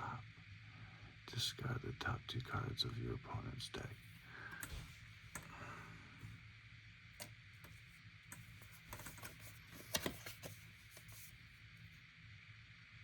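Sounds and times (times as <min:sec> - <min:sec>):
low steady hum: 0:00.0 - 0:13.0
trading cards clicking and tapping: 0:07.2 - 0:11.2.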